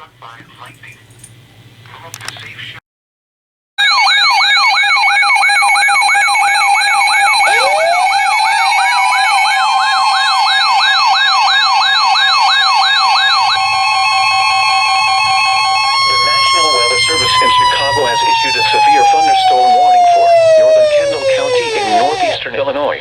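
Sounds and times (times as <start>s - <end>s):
steady tone: 6.2s - 10.8s
upward gliding tone: 6.3s - 10.3s, 16.0s - 22.4s
rising whoop alert: 6.3s - 11.3s, 16.0s - 22.4s.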